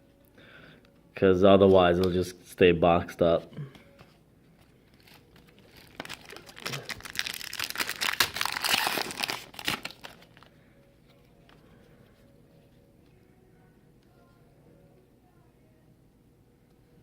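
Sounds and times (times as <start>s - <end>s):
wrapper crinkling and tearing: 4.9s - 10.5s.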